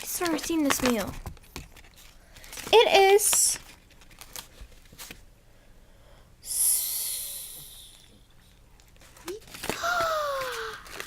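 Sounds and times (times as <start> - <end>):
person breathing out: 5.9 - 8.2, 9.7 - 11.0.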